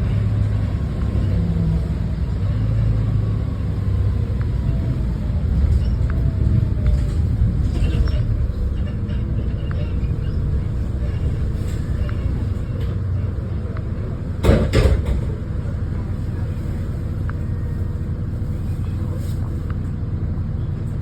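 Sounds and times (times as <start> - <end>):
diesel engine rumbling: 0.0 - 21.0
loud rattling knocks: 14.4 - 15.4.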